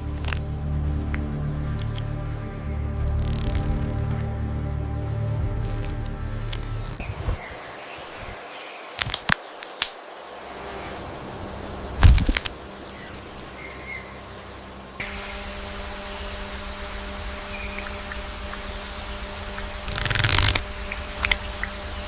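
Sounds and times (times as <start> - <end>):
steady hum: 0.0 - 8.5, 10.1 - 22.0
sharp clicks: 17.0 - 21.9.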